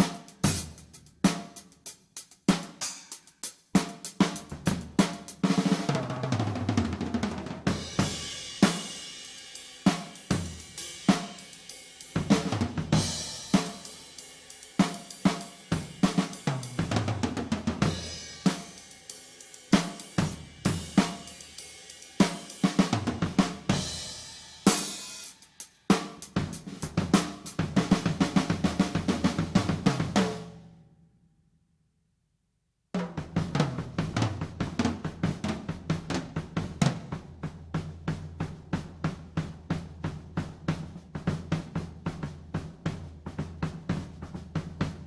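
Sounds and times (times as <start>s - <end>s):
cymbals: 0.0s - 5.7s, 7.7s - 17.0s, 17.8s - 28.6s
snare drum: 0.0s - 30.5s, 33.0s - 45.0s
bass drum beats: 4.1s - 6.0s, 25.9s - 30.2s.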